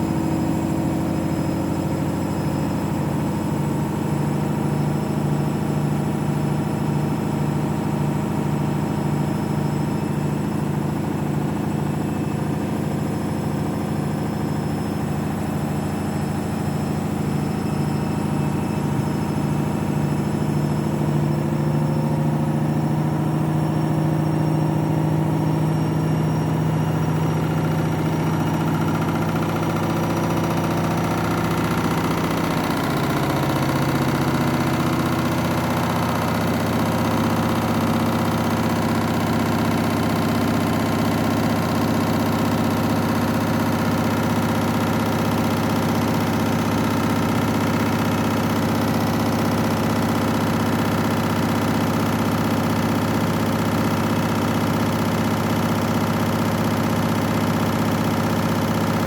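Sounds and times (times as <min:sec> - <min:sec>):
washing machine spinning: 0:00.0 - 0:59.0.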